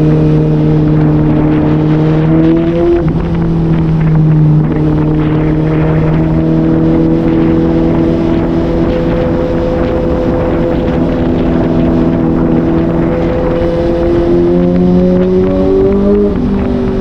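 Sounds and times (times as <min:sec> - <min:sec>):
motorcycle engine cruising: 0:00.0 - 0:17.0
wind noise on microphone: 0:00.0 - 0:17.0.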